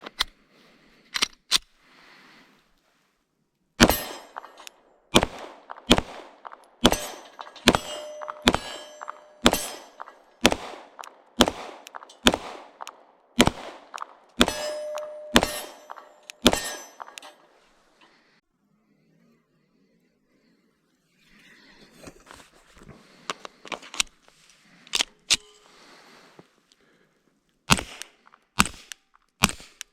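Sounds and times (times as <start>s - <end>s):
pistol shots with metallic clang: 3.8s - 17.6s.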